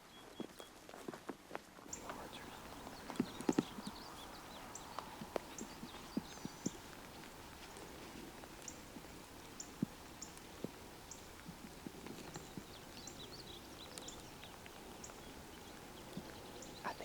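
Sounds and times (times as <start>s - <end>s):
footsteps on rough ground: 0.0s - 17.0s
high bird chirps: 1.9s - 6.9s.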